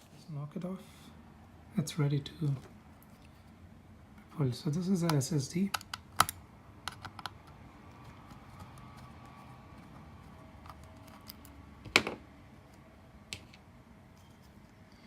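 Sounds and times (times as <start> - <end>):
small parts clicking on laptop: 5.7 - 11.6.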